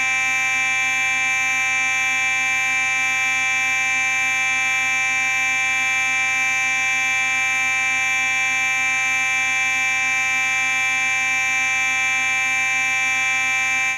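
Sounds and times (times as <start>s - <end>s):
fire alarm buzzing: 0.0s - 13.9s.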